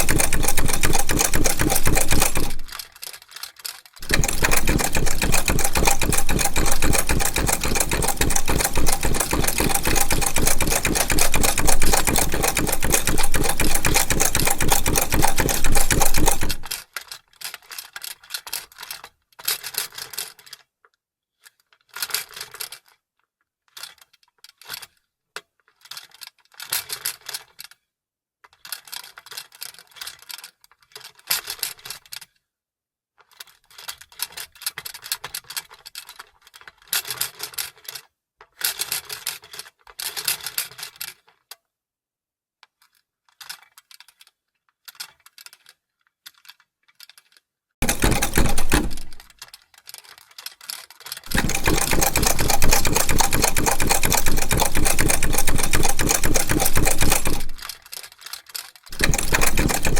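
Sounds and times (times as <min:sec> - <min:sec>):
sewing machine clattering: 0:00.0 - 0:02.8, 0:04.0 - 0:16.8, 0:47.8 - 0:49.4, 0:51.3 - 0:58.0, 0:58.9 - 0:59.9.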